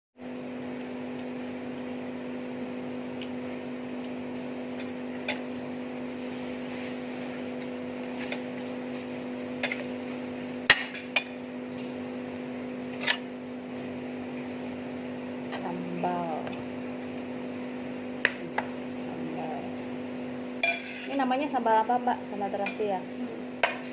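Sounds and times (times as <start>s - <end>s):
dishes and cutlery clinking: 20.6s - 21.2s.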